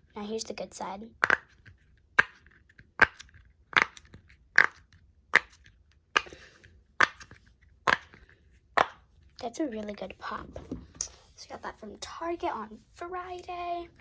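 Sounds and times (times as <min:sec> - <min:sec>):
silicone fidget toy popping: 0:01.2 - 0:06.4, 0:07.0 - 0:08.2.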